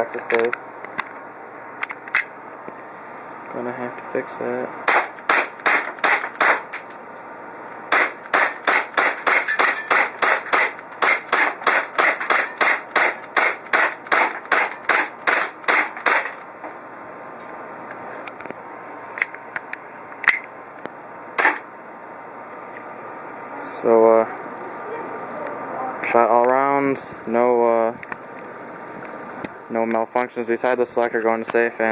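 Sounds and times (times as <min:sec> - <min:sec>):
airsoft pistol shots: 0:04.9 - 0:06.7, 0:07.9 - 0:16.4, 0:21.4 - 0:21.6.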